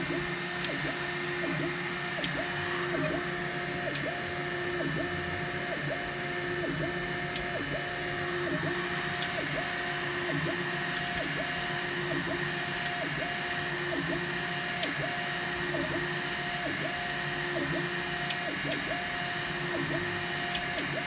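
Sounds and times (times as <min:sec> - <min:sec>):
high fan tone: 0:00.0 - 0:16.7
stepper motors whining: 0:00.0 - 0:21.0.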